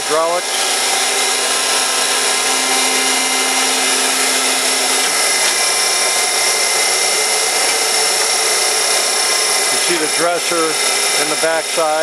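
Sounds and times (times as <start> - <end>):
dense machine noise: 0.0 - 12.0
high-pitched grinder whine: 0.0 - 12.0
low hum: 1.0 - 8.6.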